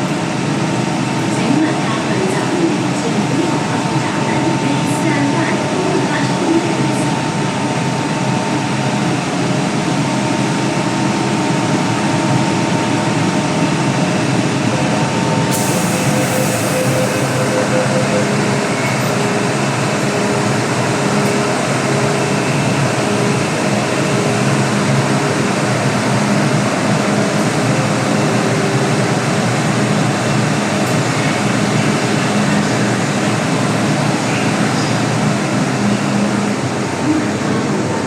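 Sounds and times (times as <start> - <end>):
train carriage rumble: 0.0 - 38.0.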